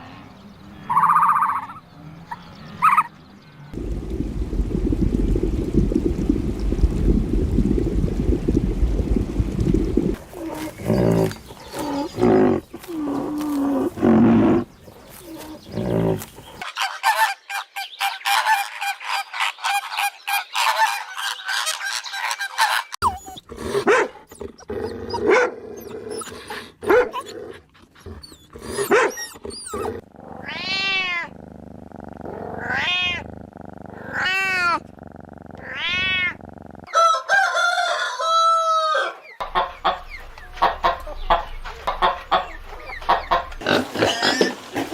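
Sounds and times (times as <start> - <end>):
animal calls: 0.0 - 3.2, 10.2 - 31.3.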